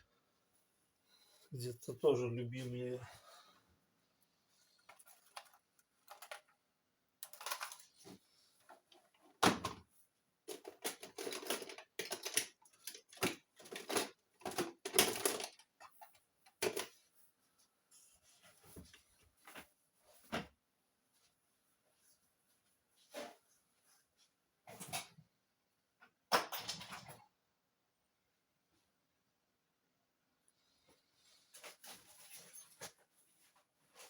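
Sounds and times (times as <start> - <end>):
tools and parts clicking and knocking: 4.9 - 6.6, 7.2 - 8.0, 10.5 - 17.0, 26.3 - 27.2.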